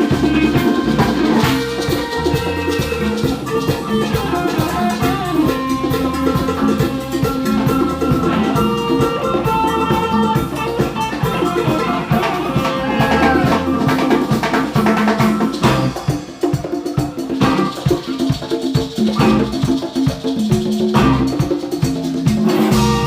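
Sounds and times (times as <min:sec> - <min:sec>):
live band playing rock: 0:00.0 - 0:23.0
shaker: 0:00.0 - 0:23.0.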